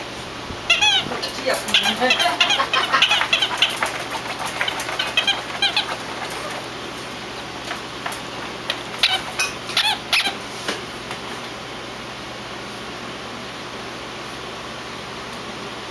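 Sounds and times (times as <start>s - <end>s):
squeaky dog toy squeaking: 0.7s - 1.1s, 9.0s - 10.4s
dog scratching at bed: 1.0s - 10.0s.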